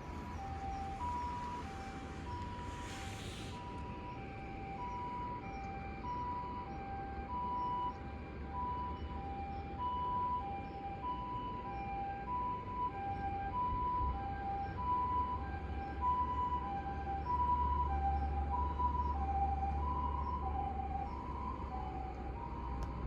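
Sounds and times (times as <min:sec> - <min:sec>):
two-note ambulance siren: 0:00.0 - 0:23.0
brief hiss: 0:02.1 - 0:03.7.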